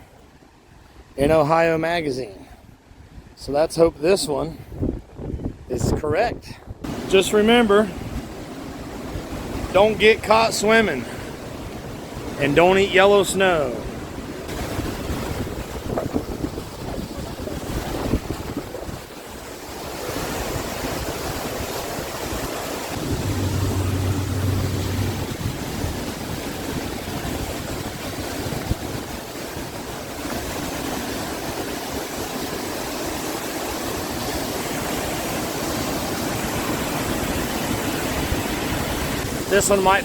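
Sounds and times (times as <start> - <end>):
waterfall roaring: 6.8 - 21.4, 22.0 - 40.0
low hum: 23.0 - 26.8.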